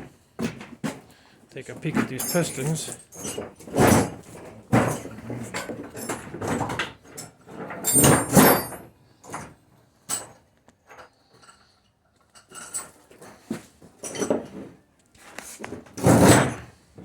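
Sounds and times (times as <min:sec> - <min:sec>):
metal engine parts and tools clunking: 0:01.6 - 0:14.8.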